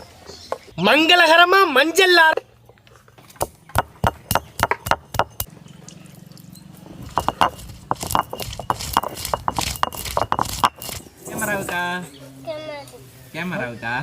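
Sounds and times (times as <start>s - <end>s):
sharp knocks and clinks: 3.4s - 11.1s.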